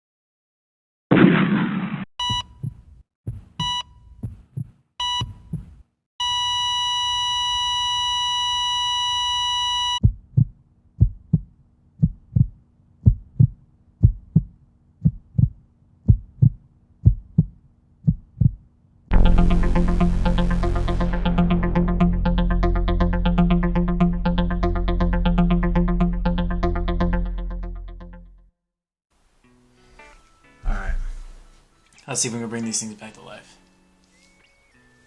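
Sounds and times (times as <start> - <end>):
heartbeat thumping: 2.2 - 5.8, 10.0 - 27.1
steady flatline tone: 19.1 - 28.1
electronic music: 19.1 - 28.4.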